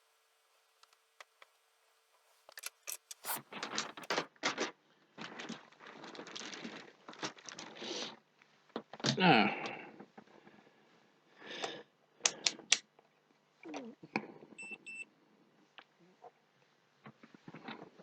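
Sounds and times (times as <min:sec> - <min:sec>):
small tools clicking and scraping: 0:02.4 - 0:04.2.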